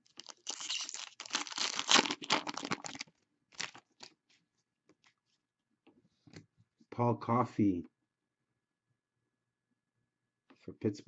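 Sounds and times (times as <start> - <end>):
plastic wrapper tearing and crinkling: 0.0 - 4.1.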